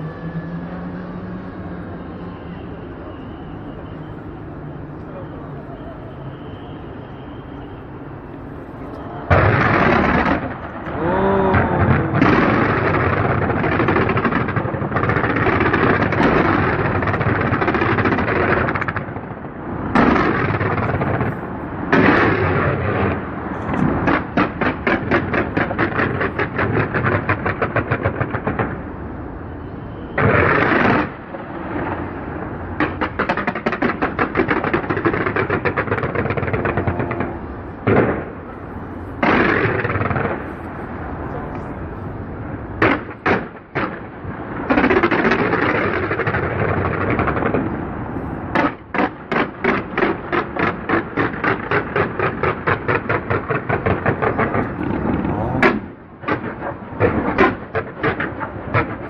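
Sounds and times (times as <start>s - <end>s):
fireworks rumble: 0.0s - 59.0s
loud firework bursts: 0.0s - 59.0s
rapid crackling pops: 48.5s - 59.0s.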